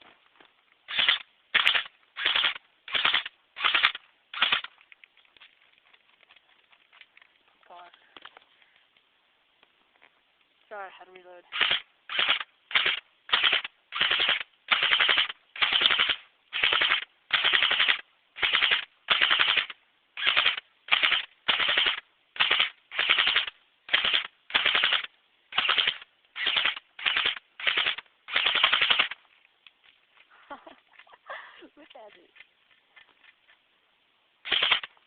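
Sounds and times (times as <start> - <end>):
airsoft gun firing bursts: 0.9 - 4.7, 11.5 - 29.2, 34.4 - 35.0.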